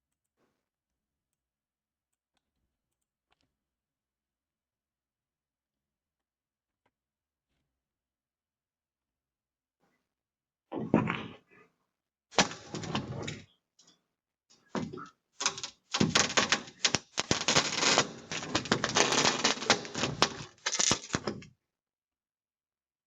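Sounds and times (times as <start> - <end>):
rapid clicking and knocking: 12.4 - 13.1, 14.8 - 21.4
rustling: 15.4 - 21.3.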